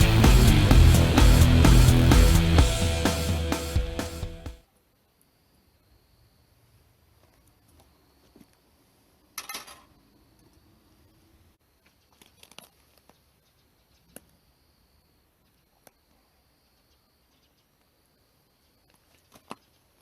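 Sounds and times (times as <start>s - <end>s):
rustle: 4.6s - 20.0s.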